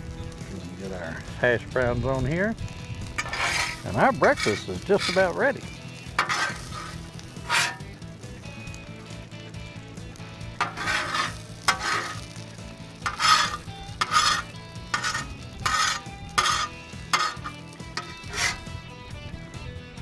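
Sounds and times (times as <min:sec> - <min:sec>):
food sizzling: 0:00.0 - 0:19.1
metal spatula scraping griddle: 0:02.8 - 0:08.7, 0:10.2 - 0:19.0.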